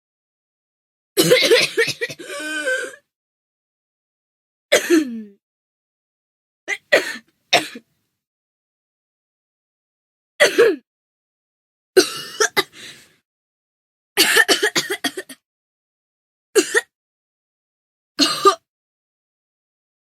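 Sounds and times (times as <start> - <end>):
person coughing: 1.2 - 3.0, 4.7 - 5.3, 6.7 - 7.8, 10.4 - 10.8, 12.0 - 12.8, 14.2 - 15.4, 18.2 - 18.6.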